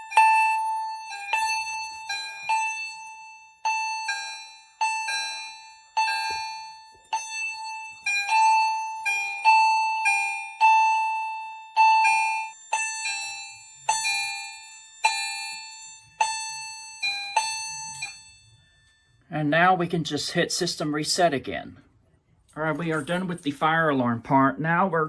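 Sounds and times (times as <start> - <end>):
two-note fire alarm chimes: 0.0 - 19.4.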